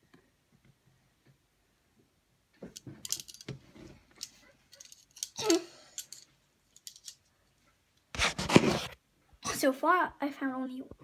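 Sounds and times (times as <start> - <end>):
small hard objects clicking and clattering: 2.6 - 3.6, 4.2 - 7.2.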